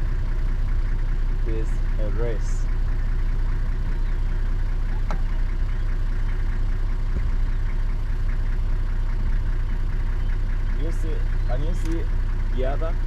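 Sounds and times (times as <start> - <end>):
vehicle engine idling: 0.0 - 13.0
sharp click: 11.7 - 12.1.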